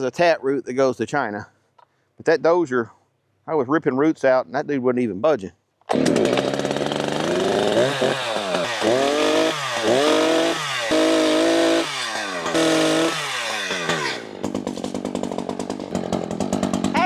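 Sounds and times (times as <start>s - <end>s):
chainsaw revving and idling: 5.9s - 17.0s.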